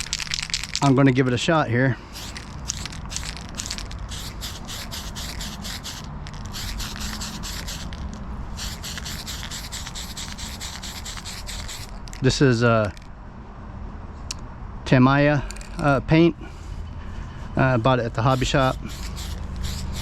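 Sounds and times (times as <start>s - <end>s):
aerosol spray can hissing: 2.1s - 12.2s, 18.2s - 20.0s.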